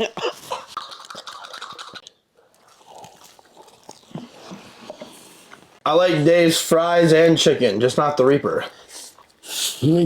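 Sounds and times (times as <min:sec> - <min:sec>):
chewing crispy fried chicken: 0:00.4 - 0:05.6.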